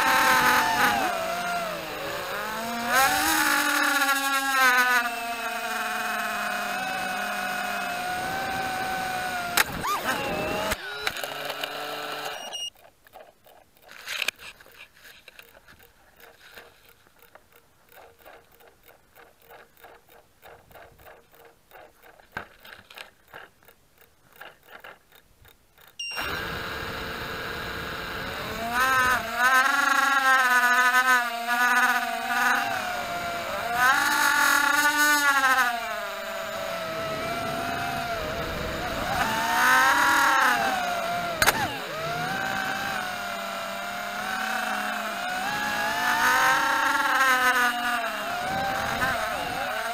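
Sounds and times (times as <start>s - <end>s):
quadcopter motors whining: 0.0s - 23.5s, 25.8s - 49.9s
faint clicking: 12.7s - 26.0s.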